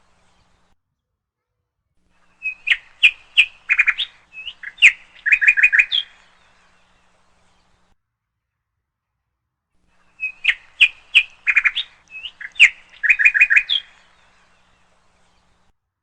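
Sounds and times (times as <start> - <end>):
songbird chirping and trilling: 2.2 - 7.9, 10.0 - 15.7.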